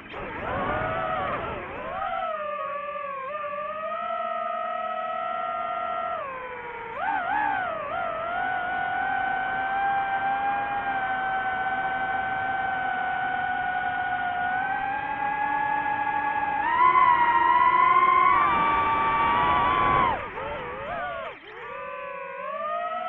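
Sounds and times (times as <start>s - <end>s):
drone motors whining: 0.0s - 23.0s.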